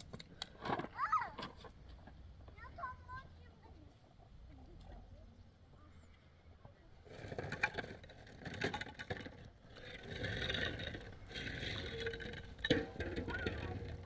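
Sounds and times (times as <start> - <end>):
irregular scraping: 7.0 - 14.0.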